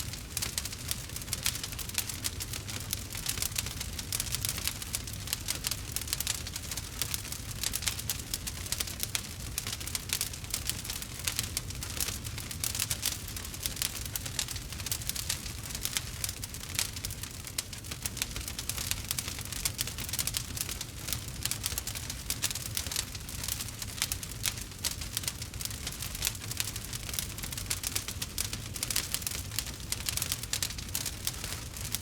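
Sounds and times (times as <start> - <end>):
fire crackling and popping: 0.0 - 32.0.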